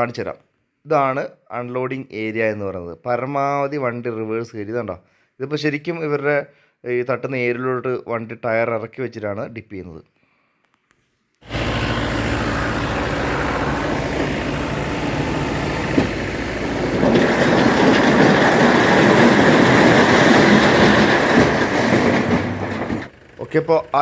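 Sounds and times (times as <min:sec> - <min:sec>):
rocks rumbling and clattering: 0:11.5 - 0:23.2
diesel engine running: 0:11.5 - 0:24.0.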